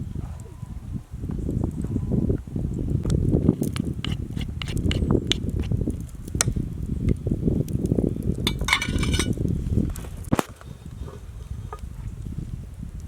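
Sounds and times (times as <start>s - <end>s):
metal cookware clinking: 8.5s - 9.4s.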